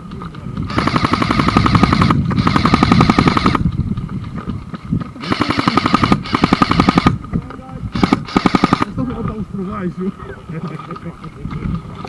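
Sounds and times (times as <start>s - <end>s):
airsoft gun full-auto bursts: 0.7s - 3.6s, 5.2s - 7.2s, 7.9s - 9.0s.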